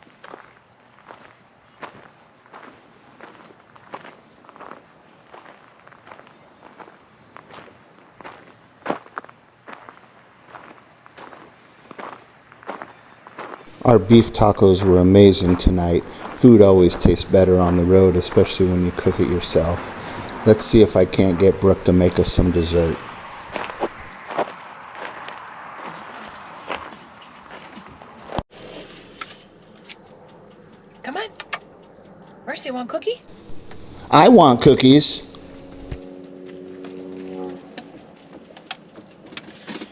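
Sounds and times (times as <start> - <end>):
crickets chirping: 13.7 - 24.1, 33.3 - 36.0
faint hiss: 13.7 - 24.1, 33.3 - 36.0.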